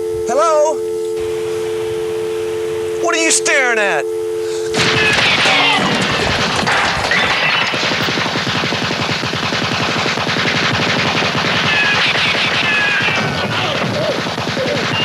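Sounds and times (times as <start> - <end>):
short falling whines: 0.0 - 15.0
rapid automatic gunfire: 4.8 - 15.0.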